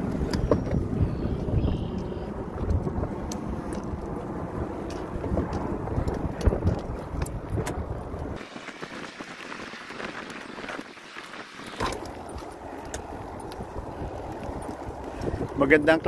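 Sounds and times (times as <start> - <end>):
wind buffeting microphone: 0.0 - 16.0
outdoor hiss: 8.4 - 12.2.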